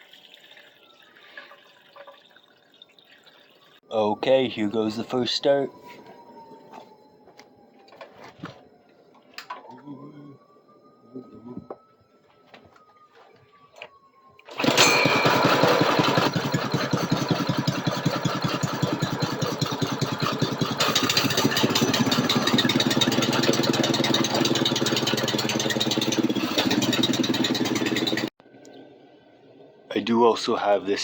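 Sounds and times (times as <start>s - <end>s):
small engine running: 14.5s - 28.3s.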